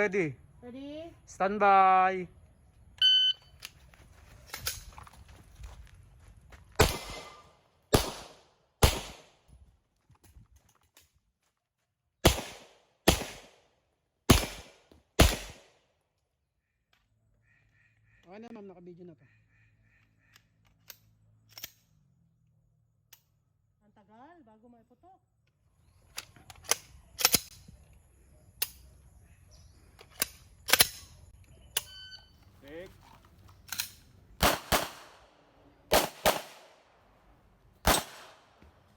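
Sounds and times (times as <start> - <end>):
pistol shots echoing: 6.8 - 9.4, 12.2 - 13.6, 14.3 - 15.8, 34.4 - 36.9, 37.8 - 38.7.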